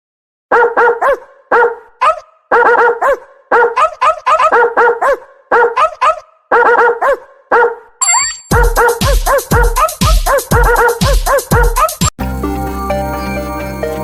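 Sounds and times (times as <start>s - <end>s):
dog barking: 0.5s - 8.0s, 8.7s - 12.1s.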